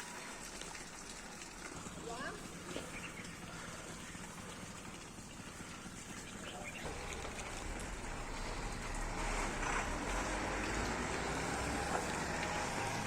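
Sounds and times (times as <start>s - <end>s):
low rumble: 6.8s - 12.1s.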